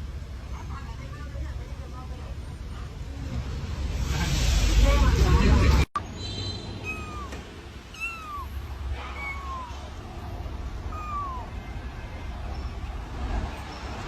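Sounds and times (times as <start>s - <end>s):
kitten meowing: 6.8s - 11.9s.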